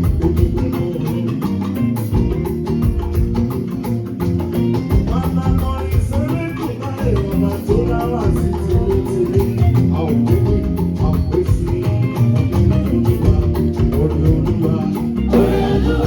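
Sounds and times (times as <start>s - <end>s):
upbeat dance band drums and bass: 0.0s - 16.0s
choir singing: 15.3s - 16.0s.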